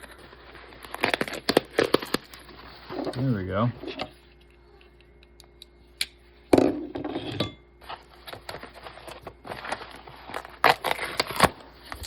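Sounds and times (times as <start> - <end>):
packing paper crinkling: 0.0 - 3.6, 7.8 - 12.0.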